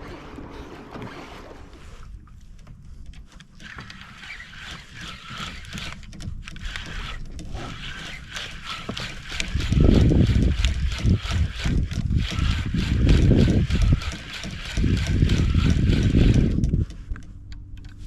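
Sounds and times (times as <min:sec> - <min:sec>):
water splashing against hull: 0:00.0 - 0:17.3
wind on microphone: 0:03.8 - 0:18.0.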